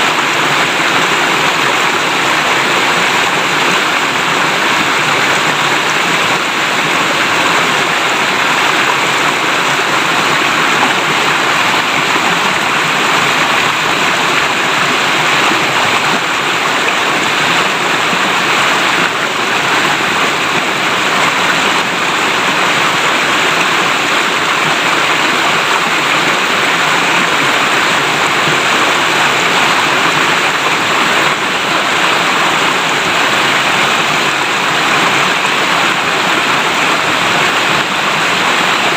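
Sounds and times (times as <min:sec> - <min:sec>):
river water babbling over stones: 0:00.0 - 0:38.9.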